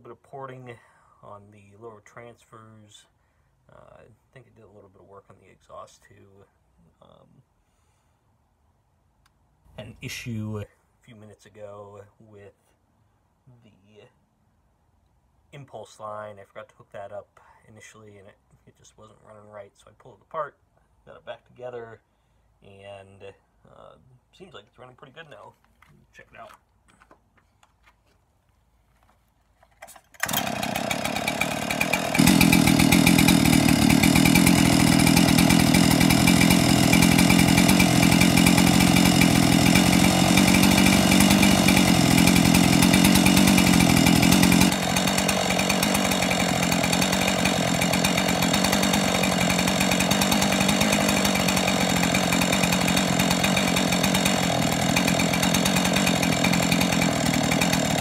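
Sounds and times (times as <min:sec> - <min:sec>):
chainsaw running: 0:29.8 - 0:58.0.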